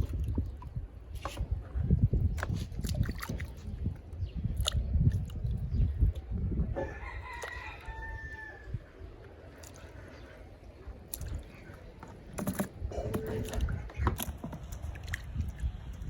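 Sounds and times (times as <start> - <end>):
rooster crowing: 6.8 - 8.7.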